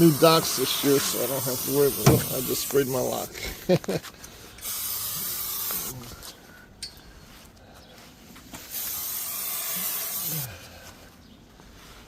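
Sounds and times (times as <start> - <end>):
aerosol can hissing: 0.0 - 2.8, 8.8 - 10.4.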